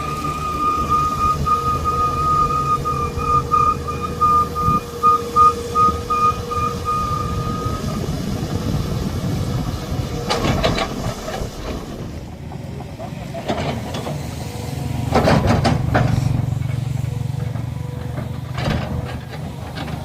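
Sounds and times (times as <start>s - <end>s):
electronic beeping alarm: 0.0s - 8.0s
diesel engine running: 0.0s - 20.0s.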